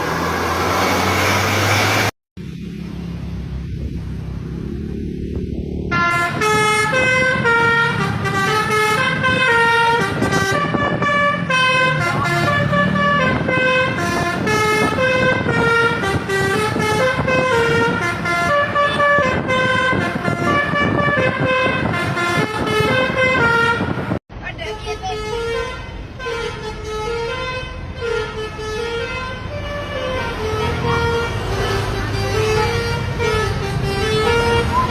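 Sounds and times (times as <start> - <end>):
bus engine running: 0.0 - 34.9
multi-tone air horn melody: 5.9 - 34.9.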